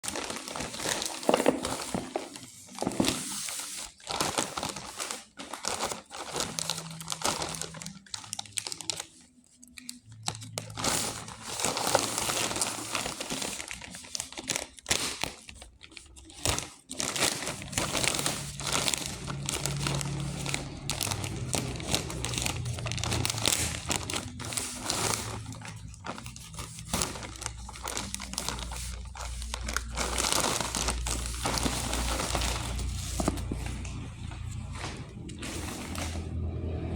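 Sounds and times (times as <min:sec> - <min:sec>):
packaging crinkling: 0:00.0 - 0:36.7.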